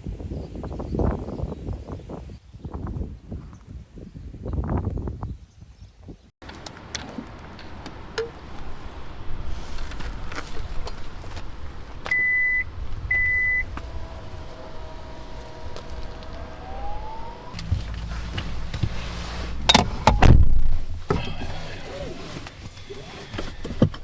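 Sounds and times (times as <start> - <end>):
low background rumble: 6.4 - 24.0
rising tone: 12.0 - 20.7
short electronic beeps: 12.1 - 13.7.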